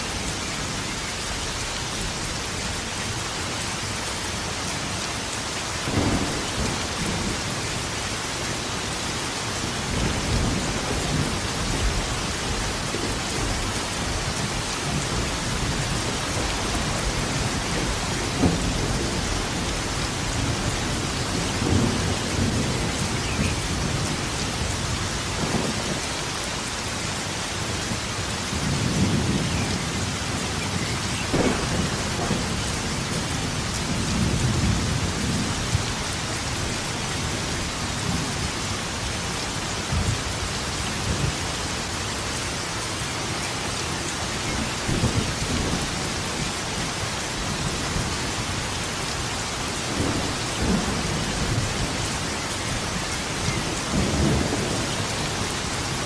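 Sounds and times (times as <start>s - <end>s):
heavy rain: 0.0s - 56.0s
sharp thunder cracks: 5.9s - 7.4s, 31.3s - 32.8s
thunder rumbling: 5.9s - 8.7s, 9.6s - 26.1s, 28.5s - 39.0s, 49.8s - 56.0s.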